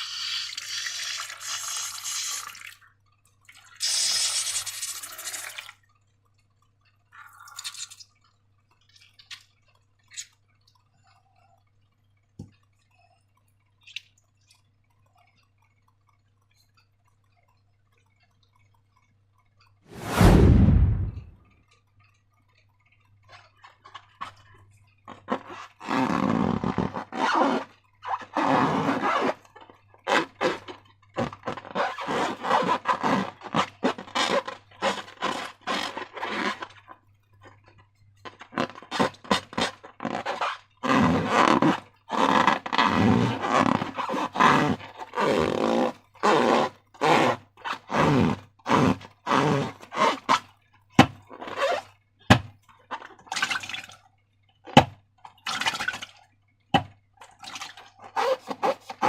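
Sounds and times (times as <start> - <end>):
wet squishing of slime and balloons: 38.2 - 59.0.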